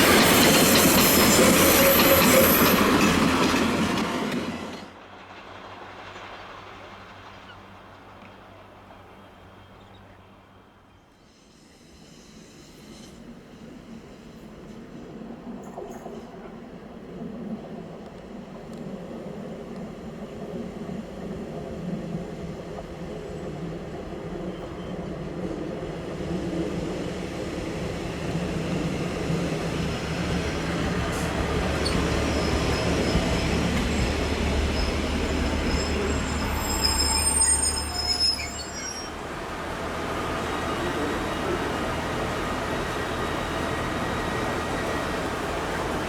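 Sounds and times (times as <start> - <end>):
diesel railbus passing: 0.0 - 46.0
high-pitched wheel squeal: 31.8 - 39.2.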